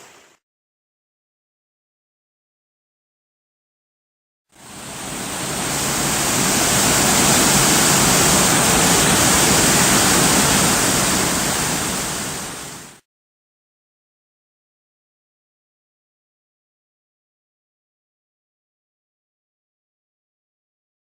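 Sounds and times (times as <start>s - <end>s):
waterfall roaring: 4.6s - 13.0s.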